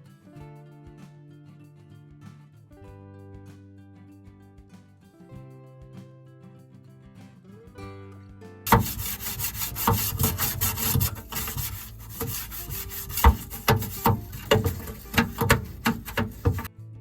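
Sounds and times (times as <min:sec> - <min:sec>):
plastic drawer scraping and knocking: 0:08.7 - 0:16.7.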